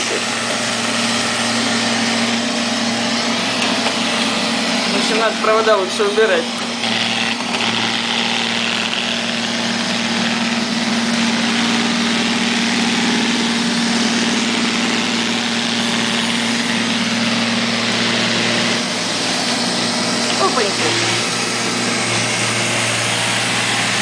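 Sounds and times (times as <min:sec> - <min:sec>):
robot vacuum cleaner running: 0:00.0 - 0:24.0.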